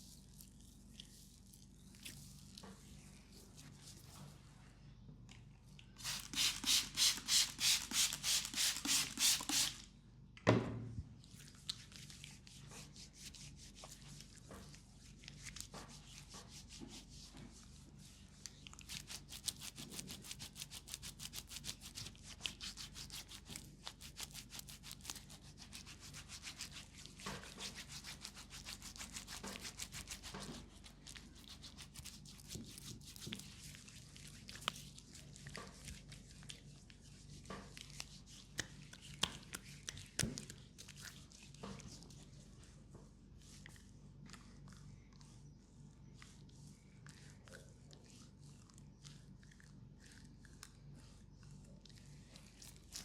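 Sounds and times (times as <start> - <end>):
thump: 10.4 - 11.1.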